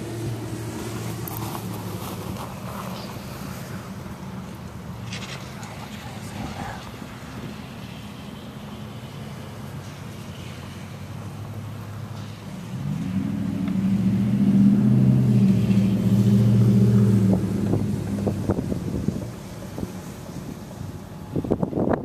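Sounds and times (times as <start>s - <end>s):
motor vehicle passing by: 0.0s - 22.0s
wind gusts on microphone: 13.9s - 22.0s.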